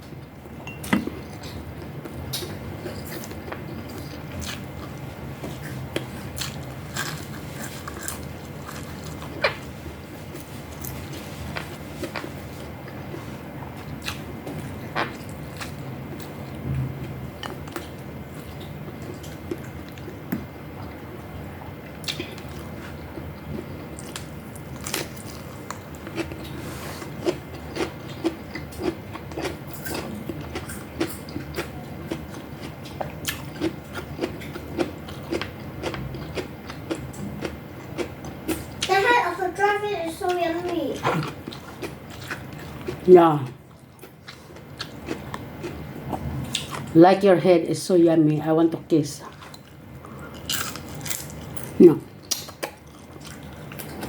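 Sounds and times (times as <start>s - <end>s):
person chewing and biting: 2.3s - 9.7s, 22.0s - 38.8s, 41.0s - 43.0s, 49.3s - 54.0s.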